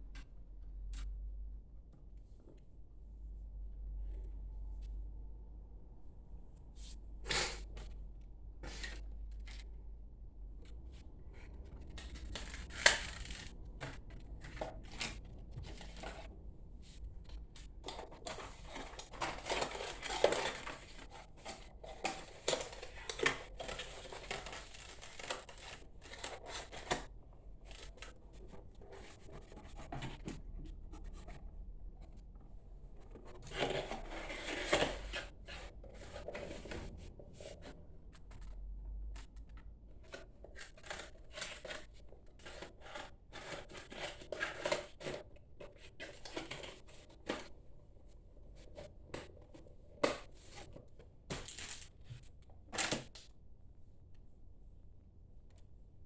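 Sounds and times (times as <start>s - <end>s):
handling computer parts and cables: 11.3s - 31.4s, 32.0s - 53.4s.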